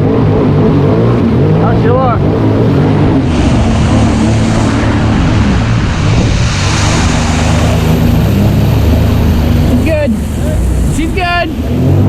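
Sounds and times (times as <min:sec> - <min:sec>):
rushing wind: 0:00.0 - 0:12.0
watercraft engine running: 0:00.0 - 0:12.0
water spray: 0:03.3 - 0:12.0.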